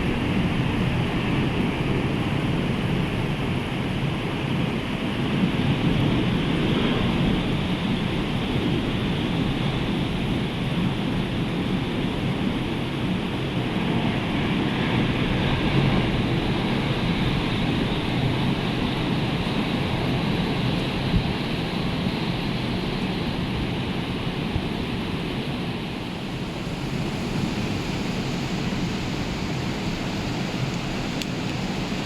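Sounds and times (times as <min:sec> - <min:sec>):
wind rumbling on microphone: 0:00.0 - 0:32.0
sea surf breaking: 0:26.0 - 0:32.0.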